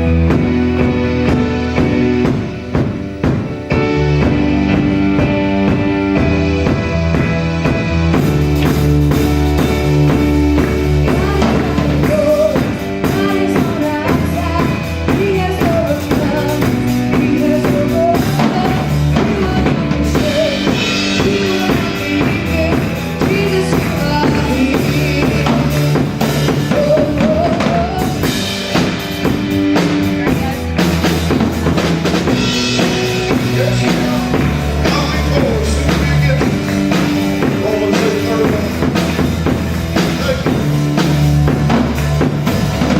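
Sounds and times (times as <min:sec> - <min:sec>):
bass guitar: 0:00.0 - 0:42.9
drum kit: 0:00.0 - 0:42.9
keyboard melody: 0:00.0 - 0:42.9.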